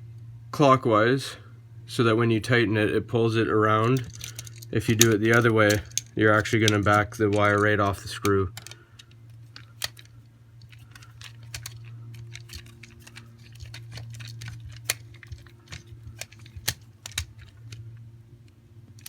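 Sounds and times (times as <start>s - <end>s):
steady low hum: 0.0s - 19.0s
screwdriver clicks and scrapes: 3.9s - 17.9s.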